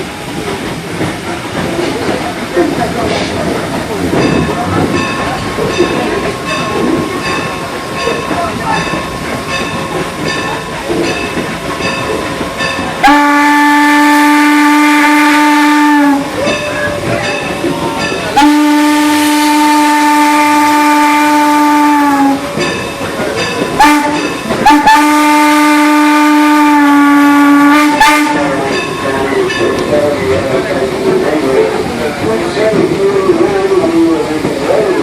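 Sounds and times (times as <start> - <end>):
moving train rumble: 0.0 - 35.0
steam locomotive whistle: 13.0 - 22.6, 23.8 - 28.6.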